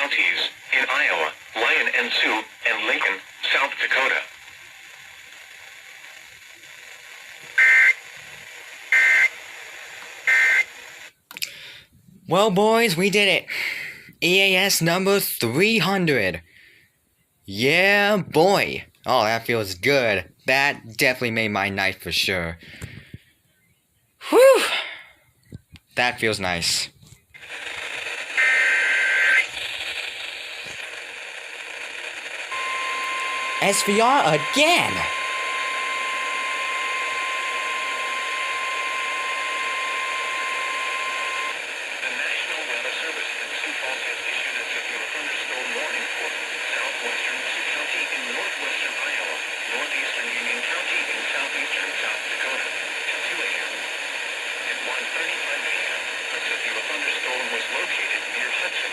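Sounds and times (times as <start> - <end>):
faint radio hiss: 0.0 - 58.9
two-tone digital data burst: 32.6 - 41.6.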